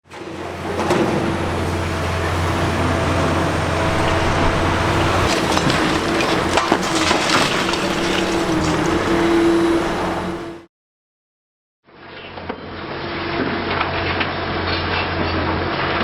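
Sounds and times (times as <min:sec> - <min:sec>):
excavator running: 0:00.0 - 0:10.7
concrete crunching and cracking: 0:00.4 - 0:09.9.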